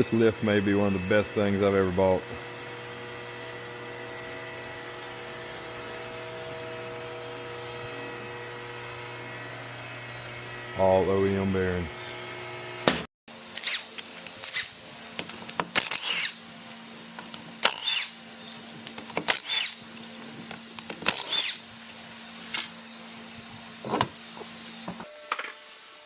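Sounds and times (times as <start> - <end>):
handheld power tool bursts: 13.4 - 16.4, 17.2 - 21.8.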